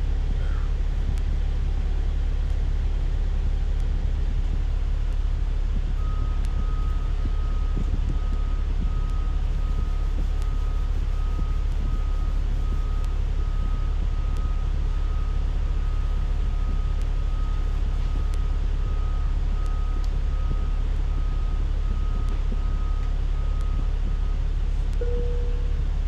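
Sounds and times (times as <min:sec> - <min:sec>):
bus engine and road rumble: 0:00.0 - 0:26.0
high electronic beep: 0:25.0 - 0:25.7.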